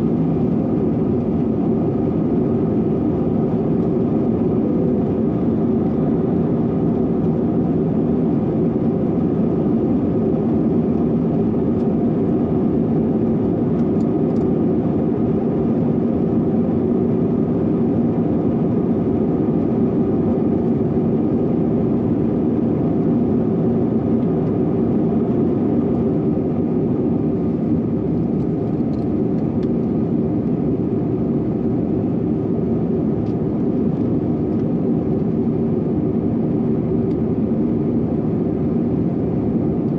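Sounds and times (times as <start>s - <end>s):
jet cabin roar: 0.0s - 39.9s.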